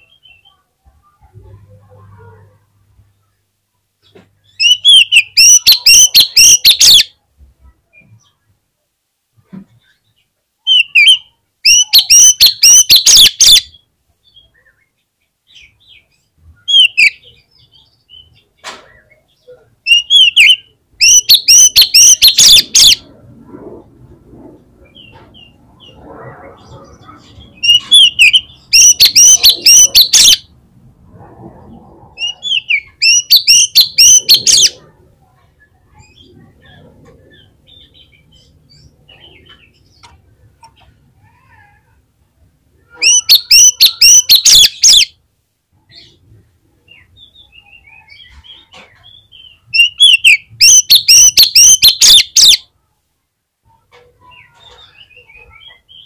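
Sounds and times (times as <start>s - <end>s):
bird singing rapid chattering notes: 4.4s - 7.1s, 10.6s - 14.8s, 15.5s - 23.1s, 26.6s - 30.5s, 32.2s - 34.8s, 43.0s - 45.1s, 47.2s - 52.6s.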